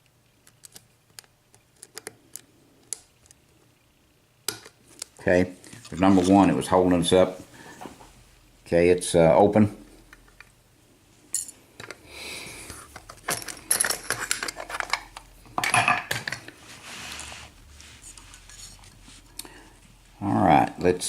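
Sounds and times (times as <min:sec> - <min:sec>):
metal tools clinking: 0:13.2 - 0:15.0.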